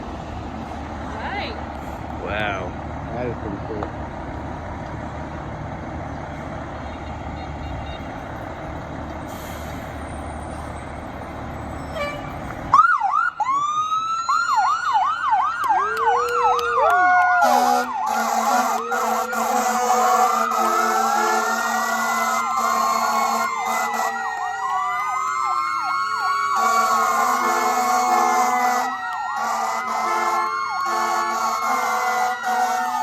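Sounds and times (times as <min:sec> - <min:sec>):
idling vehicle engines rumble: 0:00.0 - 0:33.0
blaring horn tones: 0:06.8 - 0:08.2, 0:17.4 - 0:24.3, 0:26.5 - 0:33.0
sirens yelping: 0:08.1 - 0:33.0.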